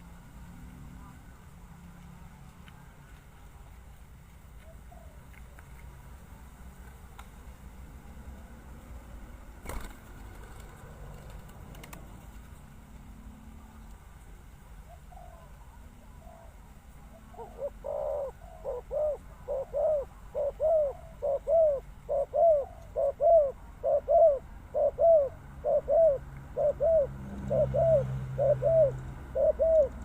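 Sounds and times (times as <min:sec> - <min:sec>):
dove cooing: 0:14.9 - 0:30.0.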